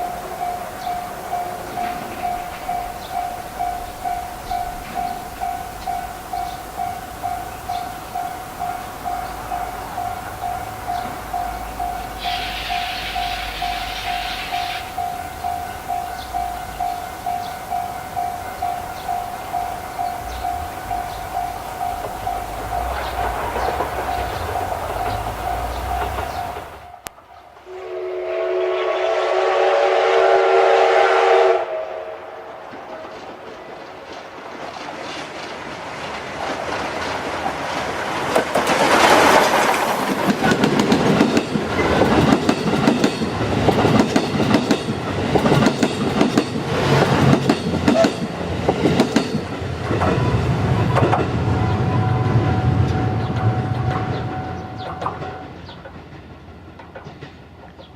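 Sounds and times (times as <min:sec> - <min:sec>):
steam locomotive whistle: 0:00.0 - 0:26.8, 0:27.6 - 0:32.6
wheels clicking over rail joints: 0:00.0 - 0:27.7, 0:32.7 - 0:57.9
train passing: 0:00.0 - 0:57.9.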